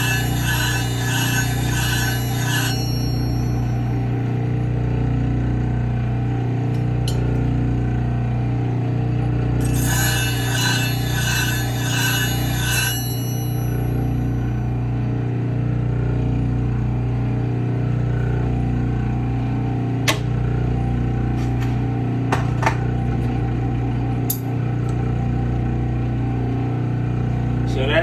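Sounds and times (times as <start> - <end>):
blade grinding on plate: 0.0 - 3.8, 9.6 - 14.5, 21.3 - 22.9
grinding machine motor humming: 0.0 - 28.0.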